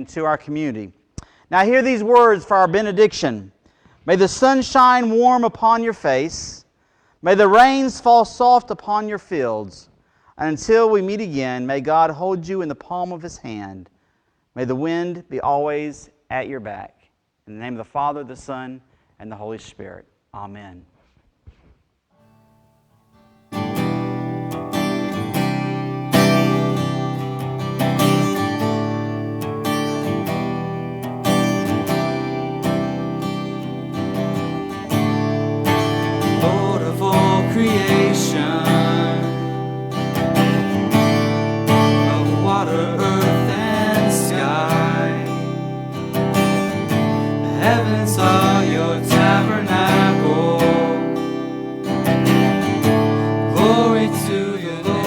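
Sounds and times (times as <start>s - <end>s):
acoustic guitar strumming: 22.2s - 55.0s
person singing: 24.9s - 55.0s.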